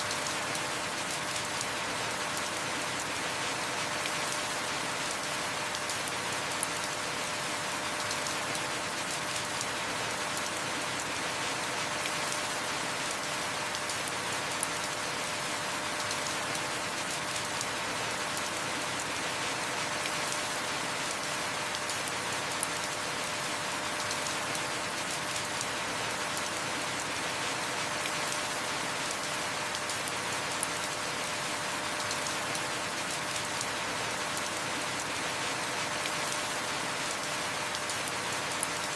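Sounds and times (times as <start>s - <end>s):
heavy rain: 0.0s - 38.9s
raindrops ticking on a surface: 0.0s - 38.9s.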